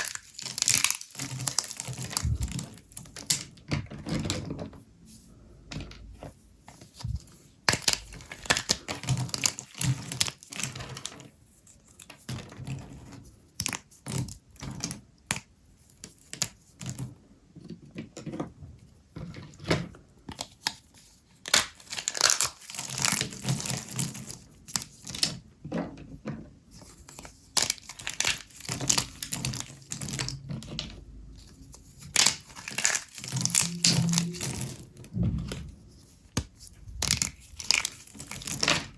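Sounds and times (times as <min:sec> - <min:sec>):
soap crackling and snapping: 0:00.0 - 0:03.4, 0:07.0 - 0:11.2, 0:21.4 - 0:25.4, 0:27.1 - 0:30.5, 0:31.4 - 0:34.7, 0:36.3 - 0:38.9.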